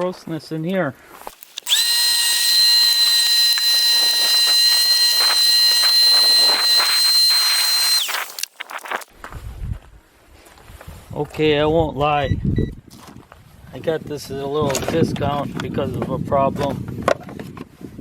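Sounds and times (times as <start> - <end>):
vacuum cleaner whining: 1.3 - 8.6.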